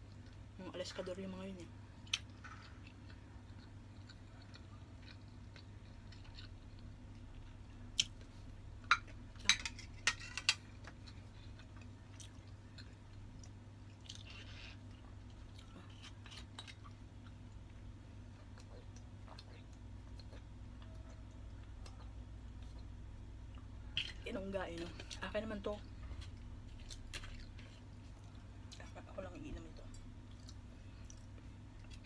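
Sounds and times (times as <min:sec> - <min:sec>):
chewing and eating: 0:00.0 - 0:01.2, 0:01.9 - 0:32.0
steady low hum: 0:00.0 - 0:32.0.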